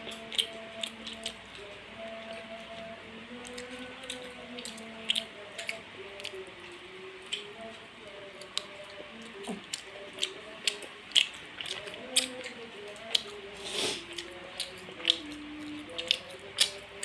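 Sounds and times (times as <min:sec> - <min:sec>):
faint background music: 0:00.0 - 0:17.0
wet chewing mouth noises: 0:08.3 - 0:17.0.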